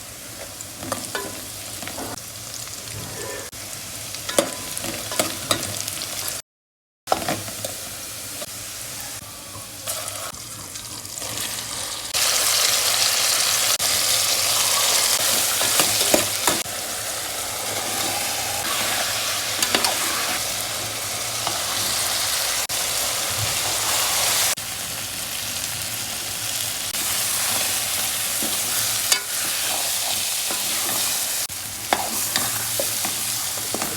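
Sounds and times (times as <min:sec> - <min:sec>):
food sizzling in hot oil: 0:00.0 - 0:06.4, 0:07.1 - 0:33.9
spoon clinking and scraping pan: 0:00.8 - 0:02.2, 0:04.3 - 0:05.8, 0:14.8 - 0:16.6, 0:17.7 - 0:20.4, 0:27.0 - 0:33.9.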